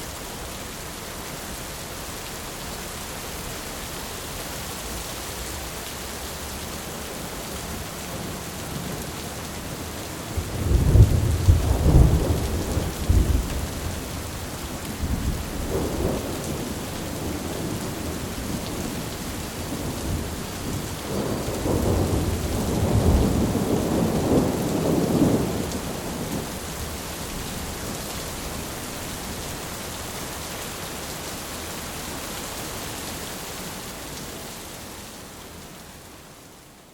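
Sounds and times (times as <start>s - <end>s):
heavy rain: 0.0s - 36.9s
rolling thunder: 10.3s - 30.1s.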